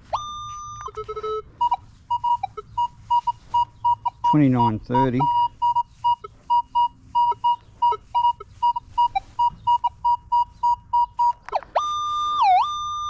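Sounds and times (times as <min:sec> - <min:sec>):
metal detector beeping: 0:00.0 - 0:13.0
swooping detector tone: 0:00.0 - 0:13.0.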